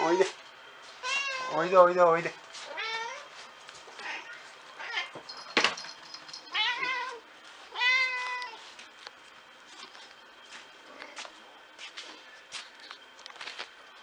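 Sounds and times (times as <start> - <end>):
cat meowing: 1.0 - 1.6, 2.7 - 3.3, 6.5 - 8.6.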